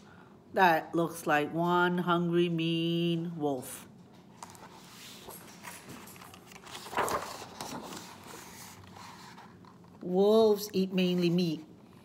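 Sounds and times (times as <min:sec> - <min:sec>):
paper pages rustling: 0:04.2 - 0:10.8.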